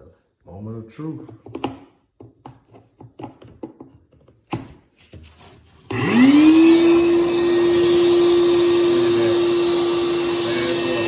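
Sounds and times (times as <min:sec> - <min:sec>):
shop vac motor running: 0:05.9 - 0:11.0.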